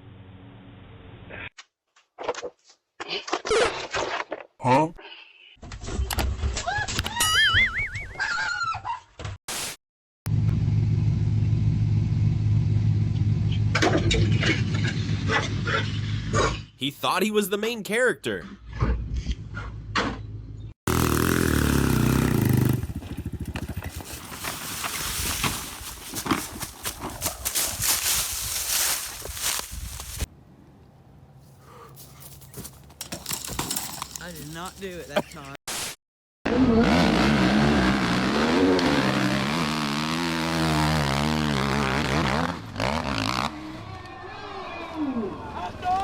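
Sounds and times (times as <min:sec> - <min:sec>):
engine running: 0:10.3 - 0:16.2, 0:20.2 - 0:30.3.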